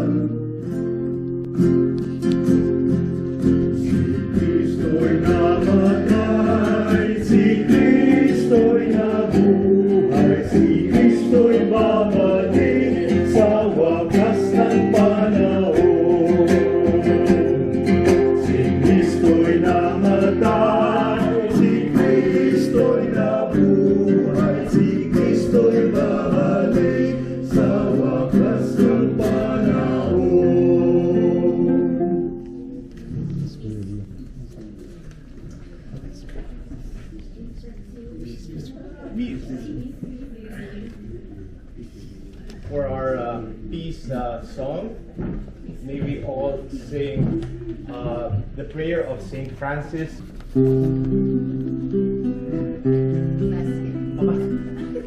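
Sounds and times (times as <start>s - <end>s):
acoustic guitar strumming: 0.0s - 33.0s, 50.6s - 55.0s
small group singing a hymn: 3.6s - 32.8s.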